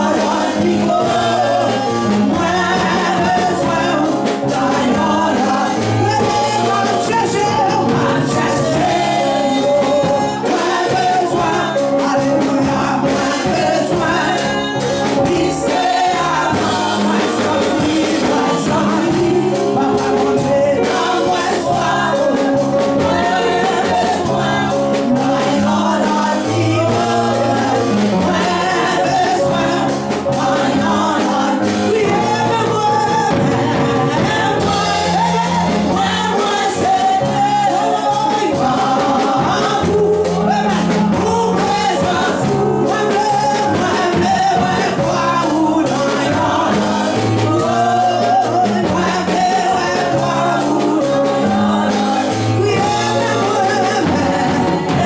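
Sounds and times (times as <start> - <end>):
band with steady beat: 0.0 - 55.0
gospel group singing: 0.0 - 55.0.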